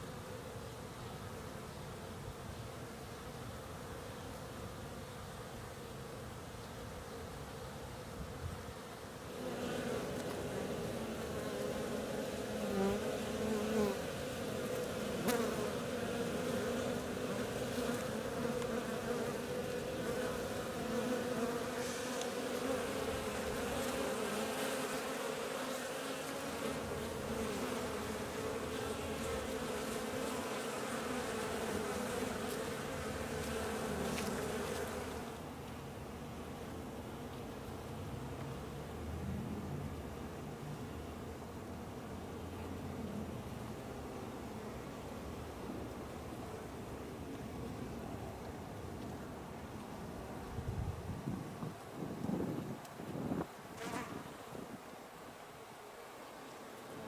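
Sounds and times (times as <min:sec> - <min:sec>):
bees buzzing: 0:09.0 - 0:35.6.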